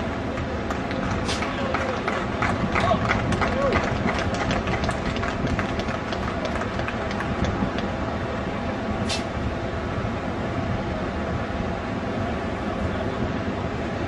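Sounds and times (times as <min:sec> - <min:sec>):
short sharp hiss: 0:01.2 - 0:01.5, 0:09.0 - 0:09.4.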